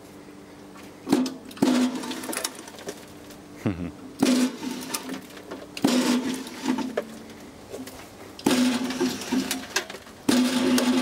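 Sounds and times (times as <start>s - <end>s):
shredder rattle: 8.4s - 11.0s.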